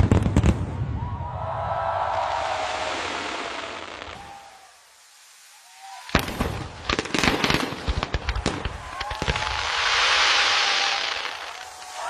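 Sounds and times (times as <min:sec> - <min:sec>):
fireworks cracks and pops: 0:00.0 - 0:01.1, 0:05.6 - 0:12.0
fireworks hissing crackle: 0:02.0 - 0:12.0
firework bang: 0:06.1 - 0:11.6.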